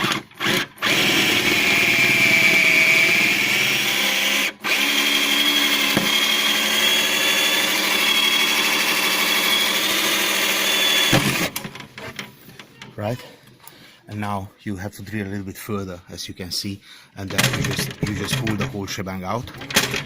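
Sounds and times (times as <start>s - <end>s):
electric drill running under load: 0.0s - 11.6s.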